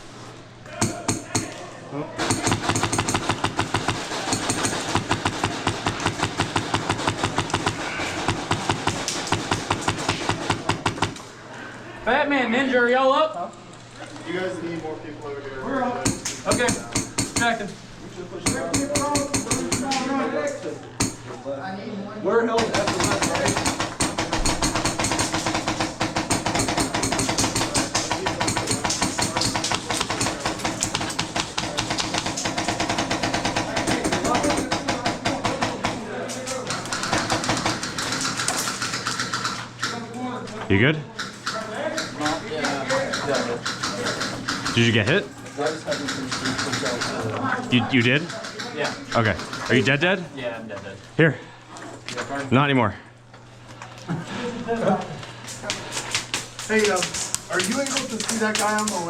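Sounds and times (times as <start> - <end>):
airsoft gun firing: 2.2 - 11.3, 22.6 - 36.0.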